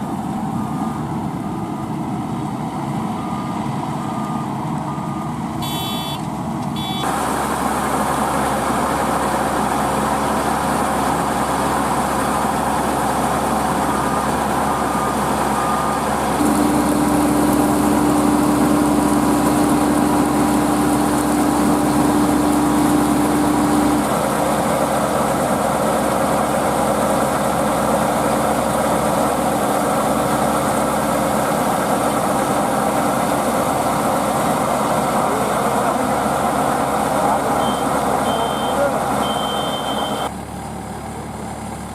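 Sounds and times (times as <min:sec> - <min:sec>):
diesel engines running: 0:00.0 - 0:41.9
short beeps: 0:05.6 - 0:07.1, 0:37.6 - 0:40.3.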